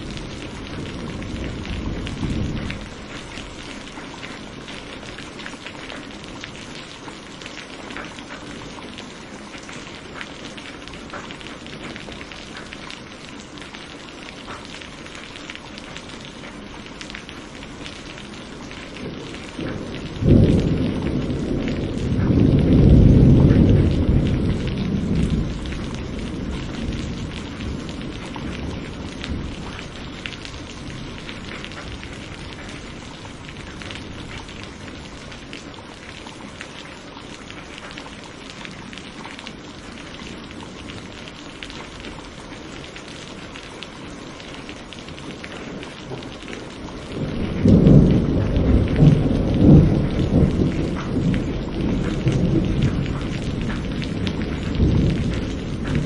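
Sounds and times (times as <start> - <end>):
low thunder rumble: 0.0 - 5.1, 18.6 - 35.7, 45.7 - 56.0
steady rain hissing: 0.0 - 56.0
loud peal of thunder: 0.3 - 3.0, 19.1 - 29.8, 47.1 - 56.0.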